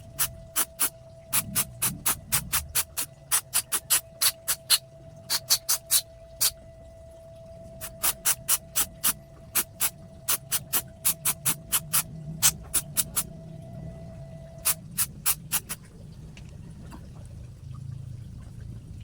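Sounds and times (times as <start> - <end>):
spray bottle hissing bursts: 0.0 - 6.6, 7.8 - 13.3, 14.6 - 15.8
faint steady tone: 0.0 - 19.0.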